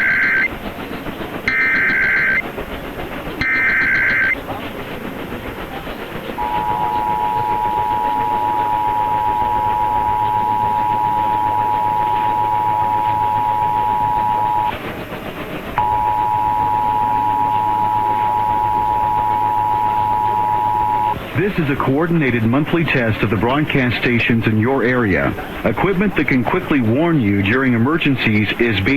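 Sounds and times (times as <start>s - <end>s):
two-tone alert signal: 6.4s - 14.7s, 15.8s - 21.2s
radio hiss and hum: 6.4s - 28.9s.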